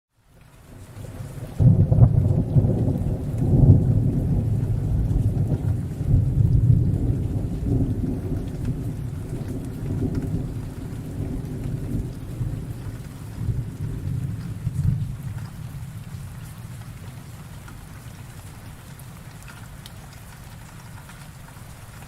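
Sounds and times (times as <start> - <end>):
rain falling: 0.1 - 22.0
rolling thunder rumble: 1.0 - 18.0.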